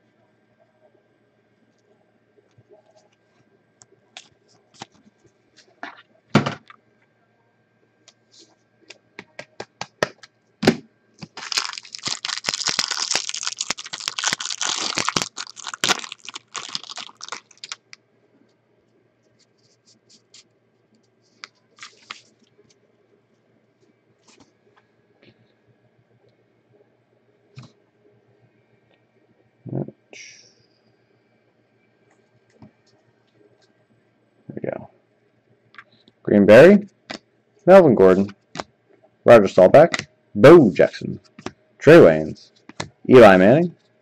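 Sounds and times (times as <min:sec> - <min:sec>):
wrapper crinkling and tearing: 0:11.2 - 0:18.0, 0:21.8 - 0:22.4.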